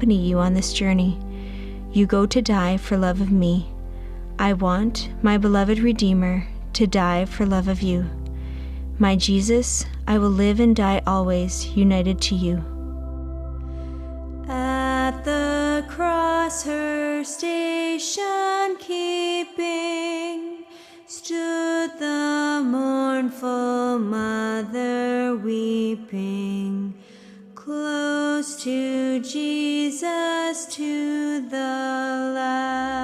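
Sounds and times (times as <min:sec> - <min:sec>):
woman singing a hymn: 0:00.0 - 0:03.8, 0:04.4 - 0:08.2, 0:09.0 - 0:12.7, 0:14.5 - 0:33.0
low hum: 0:00.0 - 0:17.6.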